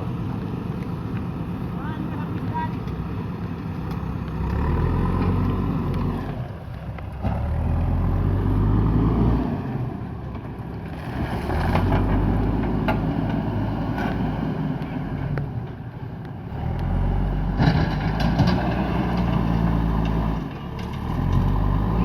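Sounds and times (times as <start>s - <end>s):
diesel engine running under load: 0.0s - 22.0s.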